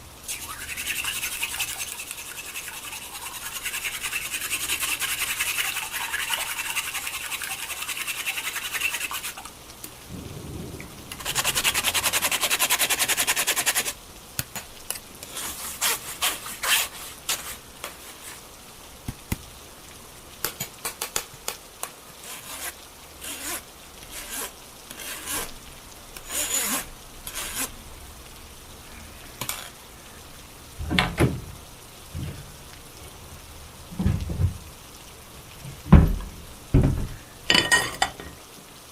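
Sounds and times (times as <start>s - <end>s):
fast rhythmic beating or scraping: 11.1s - 14.0s.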